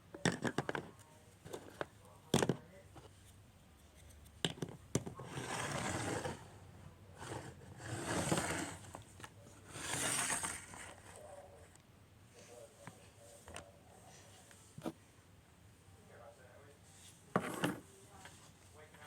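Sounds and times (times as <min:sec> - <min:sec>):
containers scraping across surface: 0:05.1 - 0:06.5, 0:07.2 - 0:11.3.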